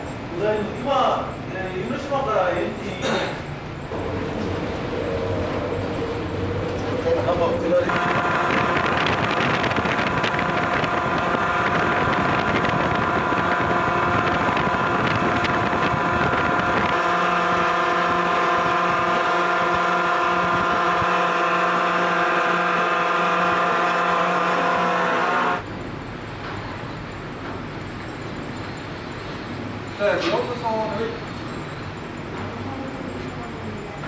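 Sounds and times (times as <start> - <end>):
ship's whistle long blast: 7.9 - 25.6.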